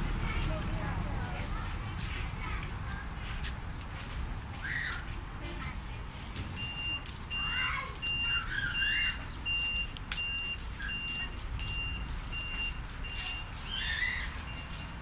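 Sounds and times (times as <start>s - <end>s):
diesel engine rumble: 0.0s - 15.0s
reversing alarm beeping: 6.6s - 15.0s.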